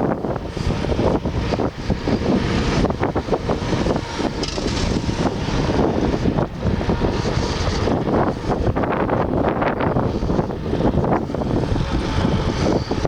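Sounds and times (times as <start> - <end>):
car road and engine noise: 0.0 - 13.0
wind buffeting microphone: 0.0 - 13.0.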